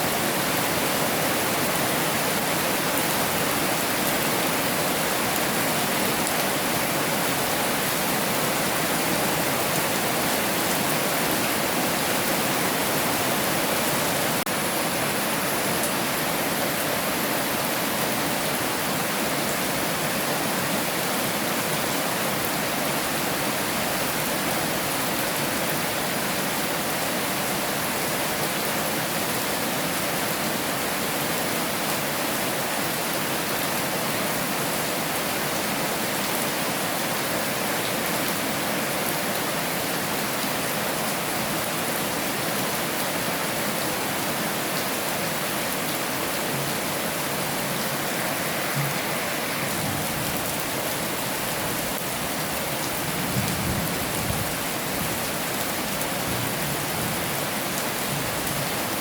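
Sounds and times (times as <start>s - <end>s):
heavy rain hissing: 43.4s - 59.0s.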